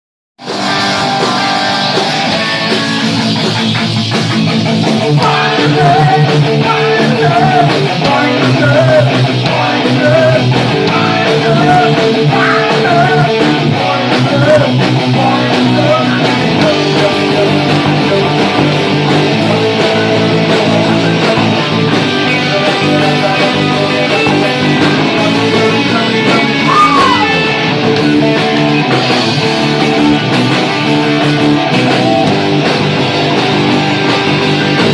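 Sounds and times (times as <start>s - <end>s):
distorted electric guitars: 0.4s - 34.9s
punk rock song: 0.4s - 34.9s
person singing: 5.1s - 27.7s.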